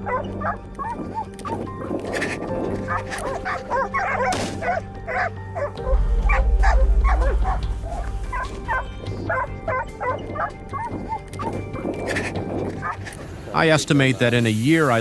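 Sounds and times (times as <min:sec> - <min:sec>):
dogs barking and yelping: 0:00.0 - 0:13.5
deep rumble: 0:05.4 - 0:12.0.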